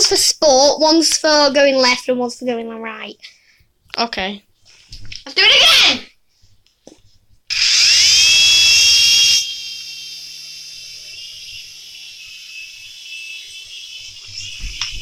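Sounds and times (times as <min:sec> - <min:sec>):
toy helicopter motors whining: 0:07.5 - 0:15.0.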